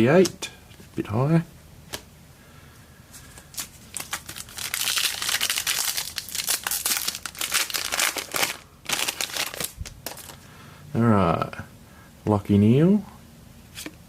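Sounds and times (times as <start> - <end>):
plastic wrapper tearing and crinkling: 3.4 - 10.4.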